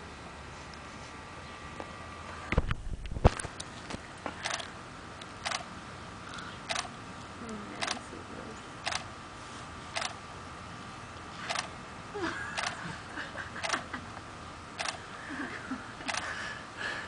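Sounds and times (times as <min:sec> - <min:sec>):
camera shutter clicks: 0:05.4 - 0:05.7, 0:10.0 - 0:10.2, 0:14.8 - 0:15.0.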